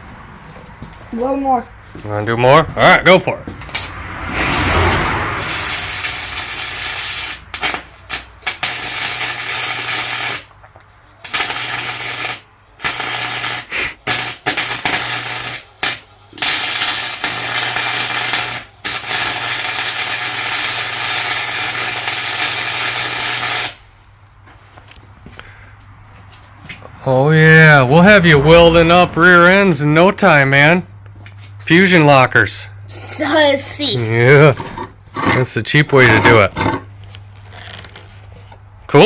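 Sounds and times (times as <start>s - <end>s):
arc welder crackling: 3.6s - 24.0s.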